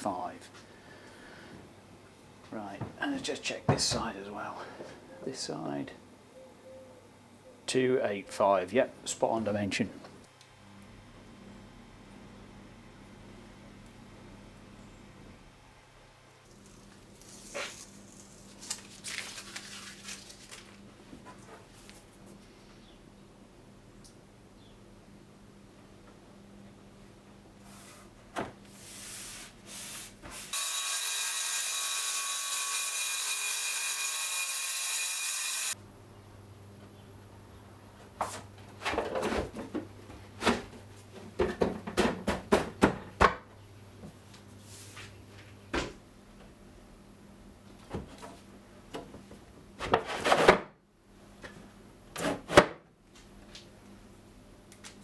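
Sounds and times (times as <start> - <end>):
steady machine noise: 30.6 - 35.8.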